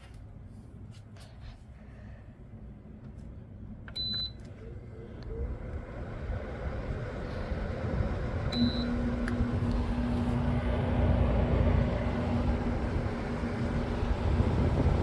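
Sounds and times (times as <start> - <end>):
fan rush of air: 0.0 - 15.0
steady low hum: 0.0 - 15.0.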